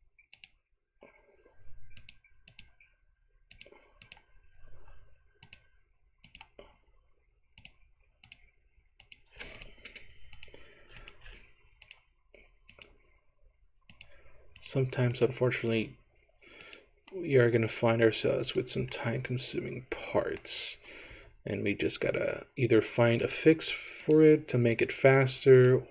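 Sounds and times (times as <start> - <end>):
computer mouse and keyboard clicking: 0.2 - 0.6, 1.9 - 2.9, 3.5 - 4.4, 5.4 - 6.6, 7.6 - 13.1, 13.9 - 16.0, 16.6 - 16.9, 24.0 - 25.9.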